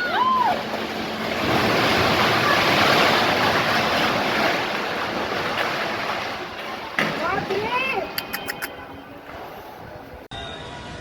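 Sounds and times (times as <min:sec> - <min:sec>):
heavy rain: 0:00.0 - 0:07.8.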